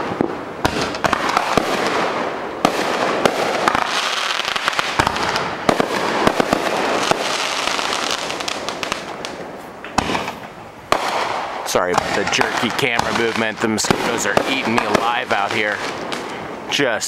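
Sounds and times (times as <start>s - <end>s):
crackling hiss: 0.0s - 17.0s
fireworks bangs: 0.0s - 17.0s.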